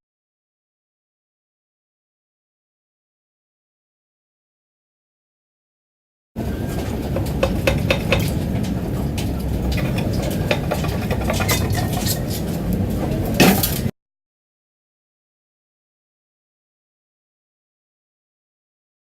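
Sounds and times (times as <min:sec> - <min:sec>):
loud ringing metal clank: 0:06.4 - 0:12.6
steady low rumble: 0:06.4 - 0:13.9
metal tools clinking and clanking: 0:06.6 - 0:13.9.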